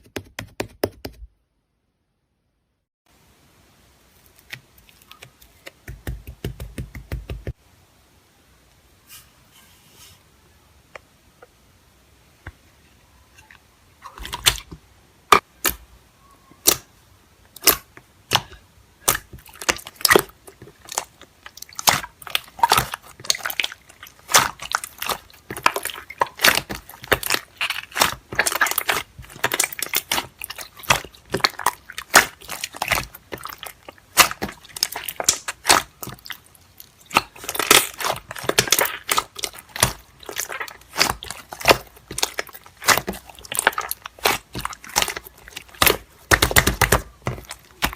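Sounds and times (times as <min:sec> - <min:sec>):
slime crackling when squeezed: 0:20.9 - 0:47.9.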